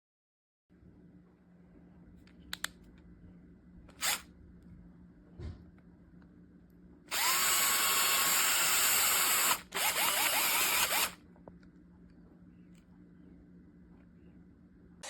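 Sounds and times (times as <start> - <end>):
cordless drill running: 4.0 - 4.2, 7.1 - 11.2.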